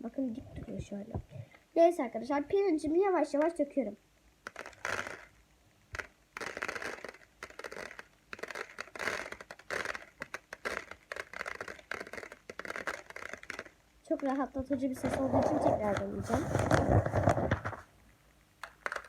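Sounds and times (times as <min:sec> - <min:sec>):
rice grains pattering on paper: 0:06.0 - 0:17.9.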